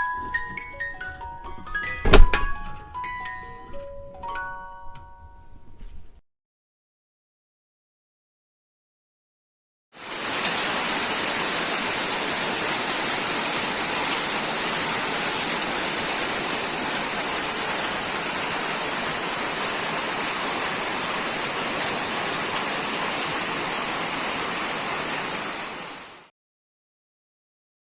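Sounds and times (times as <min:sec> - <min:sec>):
steady rain: 0:10.0 - 0:26.3.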